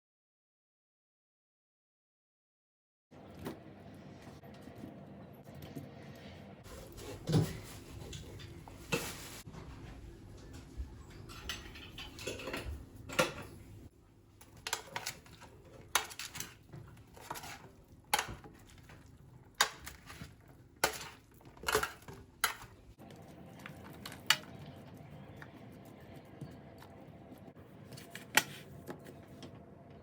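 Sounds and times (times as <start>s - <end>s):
utensils and dishes clinking: 10.4s - 25.5s.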